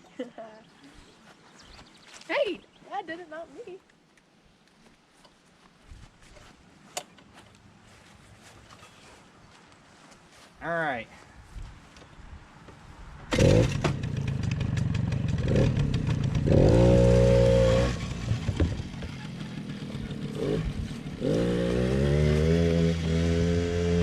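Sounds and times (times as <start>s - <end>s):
two-stroke engine revving: 13.3s - 24.0s.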